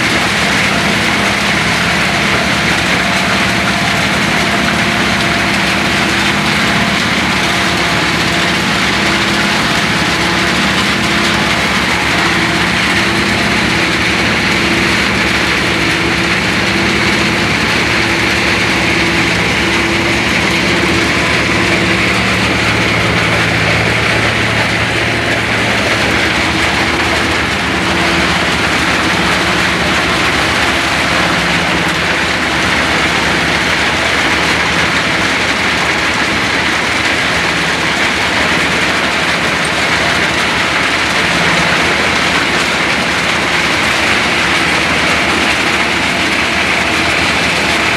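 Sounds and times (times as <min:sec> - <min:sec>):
stone crusher grinding: 0:00.0 - 0:33.8.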